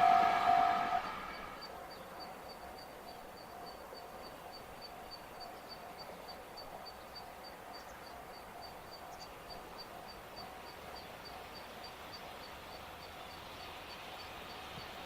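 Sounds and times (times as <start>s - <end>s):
low pulsing call: 0.0s - 1.7s.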